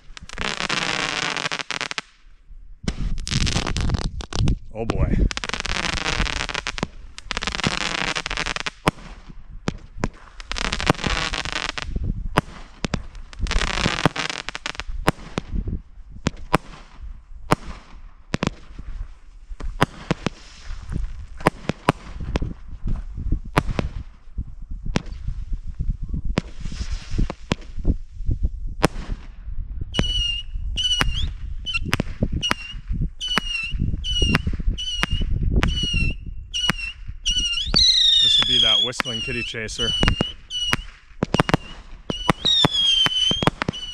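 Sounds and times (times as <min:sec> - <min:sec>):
firework pops and crackles: 0:00.0 - 0:02.2, 0:02.8 - 0:29.4, 0:30.0 - 0:43.9
fireworks hissing rushes: 0:05.2 - 0:08.8, 0:20.0 - 0:21.1, 0:26.4 - 0:27.6, 0:30.8 - 0:43.9
shrill firework whistles: 0:29.9 - 0:43.9.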